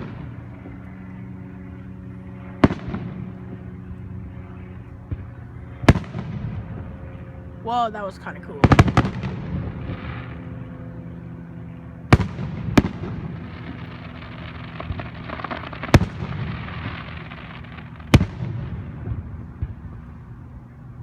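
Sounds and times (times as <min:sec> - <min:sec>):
fireworks bangs: 0:05.1 - 0:06.9, 0:08.6 - 0:10.4, 0:12.1 - 0:20.0
fireworks crackling: 0:12.1 - 0:20.0.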